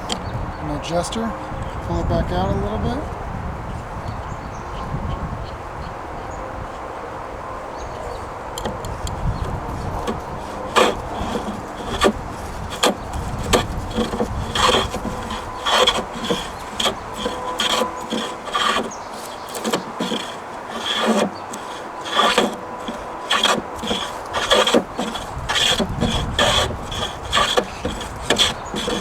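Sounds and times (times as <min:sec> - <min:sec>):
hand plane shaving wood: 0:00.0 - 0:01.8, 0:08.1 - 0:29.0.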